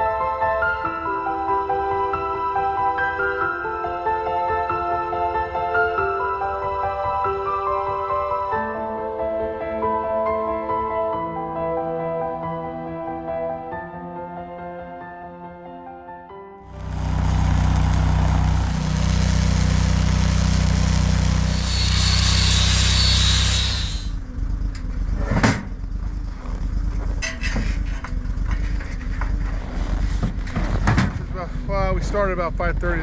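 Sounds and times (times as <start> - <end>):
heavy rushing noise: 16.7 - 24.2
vehicle engine running: 16.7 - 33.0.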